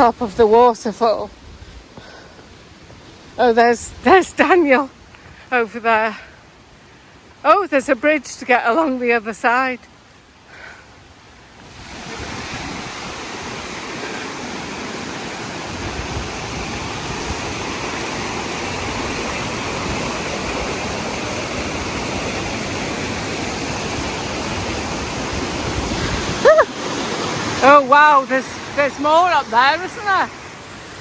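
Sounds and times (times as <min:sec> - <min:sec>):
waterfall rushing: 0:11.4 - 0:31.0.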